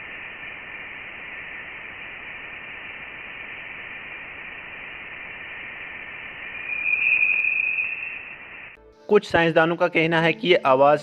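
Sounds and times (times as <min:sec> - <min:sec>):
steady hiss: 0:00.0 - 0:08.8
thin high tone: 0:06.4 - 0:08.8.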